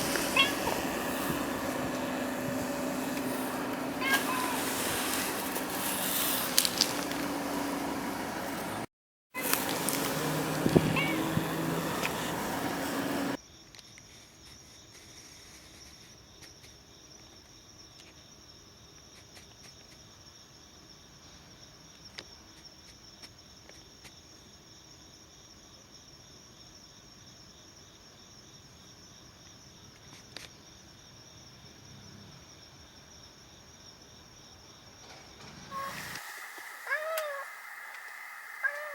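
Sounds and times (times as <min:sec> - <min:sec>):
loud noise cutting off: 0:00.0 - 0:13.4, 0:35.4 - 0:38.7
crickets chirring: 0:00.0 - 0:38.9.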